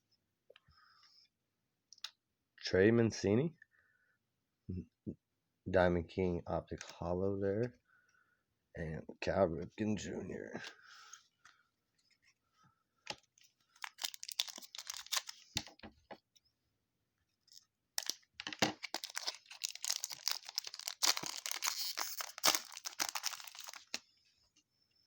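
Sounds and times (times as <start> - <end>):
foil wrapper tearing and crinkling: 13.8 - 15.7, 18.0 - 24.0.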